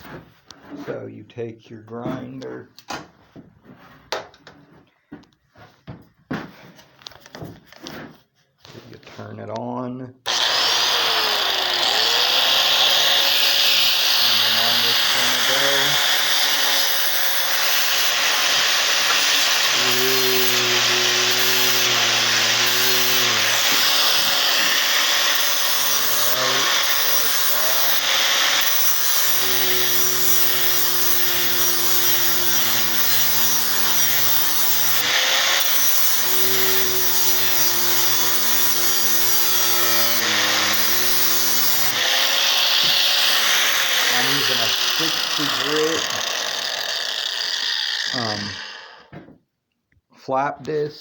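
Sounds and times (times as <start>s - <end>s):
angle grinder grinding steel: 10.3s - 49.1s.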